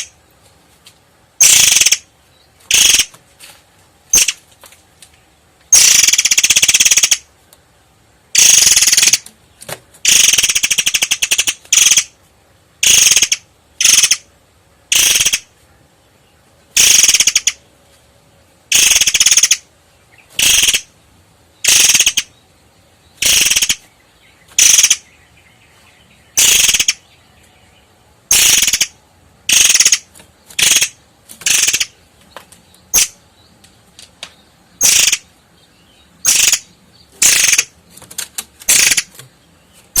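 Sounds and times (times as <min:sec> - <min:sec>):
bird singing sharp phrases: 0:18.7 - 0:37.7.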